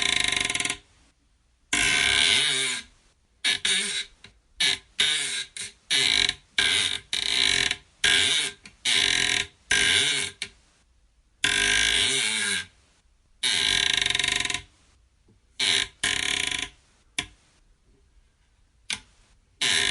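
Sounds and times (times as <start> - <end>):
creaks with bending pitch: 11.4 - 12.7.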